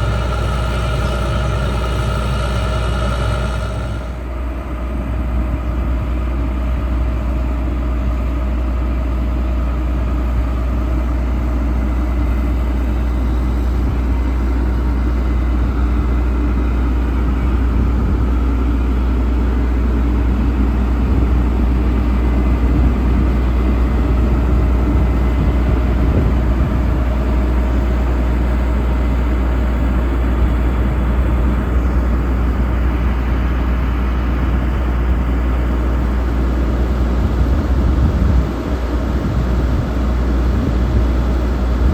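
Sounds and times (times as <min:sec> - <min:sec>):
vehicle engine rumbling: 0:00.0 - 0:07.6, 0:09.0 - 0:41.9.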